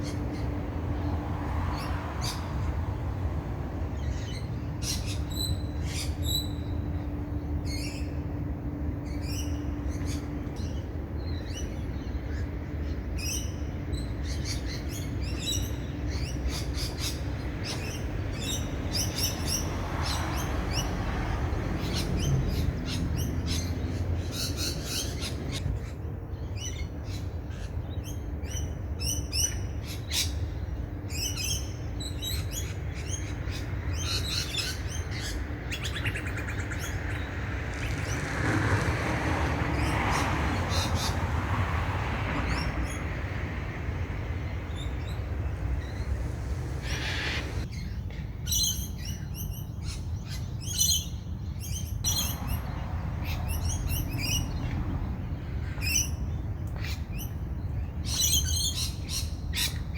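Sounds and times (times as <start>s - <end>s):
small birds chirping: 0.0s - 38.6s, 39.3s - 59.9s
steady low rumble: 42.4s - 48.4s.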